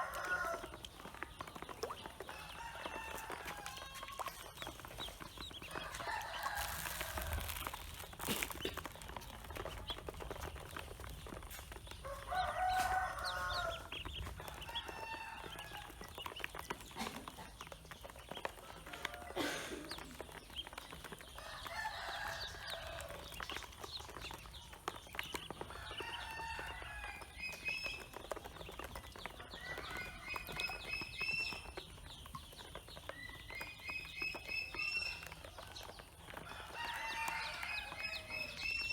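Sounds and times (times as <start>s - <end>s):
ducklings peeping: 0.0s - 38.9s.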